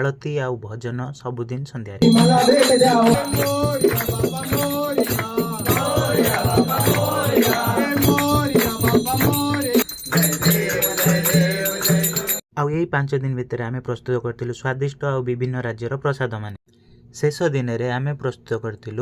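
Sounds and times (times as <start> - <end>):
person singing: 2.0 - 12.4
jingling rattling percussion: 2.0 - 12.5.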